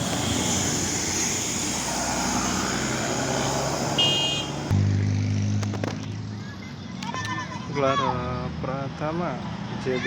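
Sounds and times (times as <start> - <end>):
bus driving past: 0.0 - 6.7.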